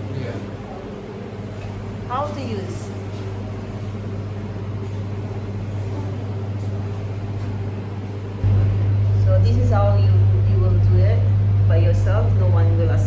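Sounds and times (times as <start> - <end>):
vending machine electrical hum: 0.0 - 13.0.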